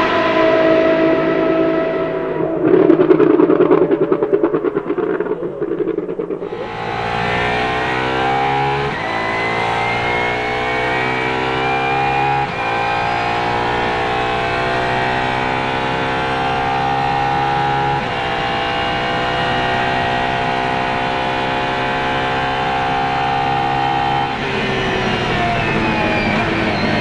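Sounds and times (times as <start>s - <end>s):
car engine accelerating hard: 6.0s - 27.0s.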